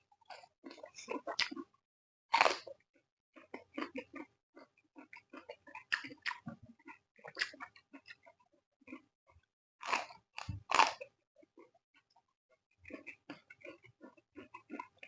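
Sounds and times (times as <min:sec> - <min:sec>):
chewing crisp vegetables: 0:00.1 - 0:15.0
loud bite crunches: 0:02.3 - 0:02.6, 0:09.8 - 0:11.0.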